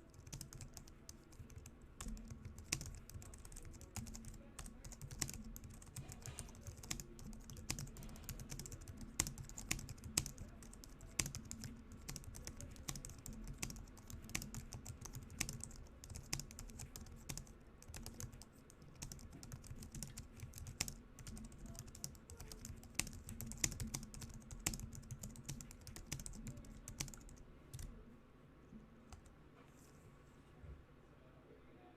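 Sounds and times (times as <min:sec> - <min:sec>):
fast keyboard typing: 0:00.0 - 0:27.9.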